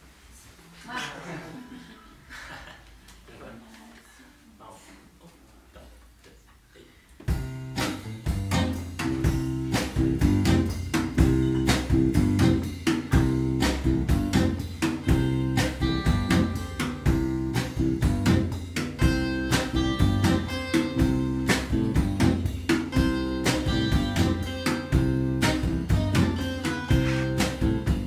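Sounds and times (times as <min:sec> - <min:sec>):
bass: 0:04.6 - 0:28.0
drums: 0:07.1 - 0:28.0
acoustic guitar strumming: 0:07.7 - 0:28.0
plucked strings: 0:07.8 - 0:28.0.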